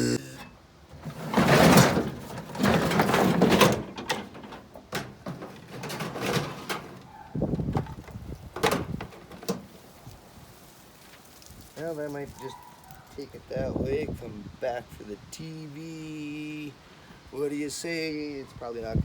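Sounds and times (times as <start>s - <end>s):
scrap parts clattering and scraping: 0.9s - 9.9s.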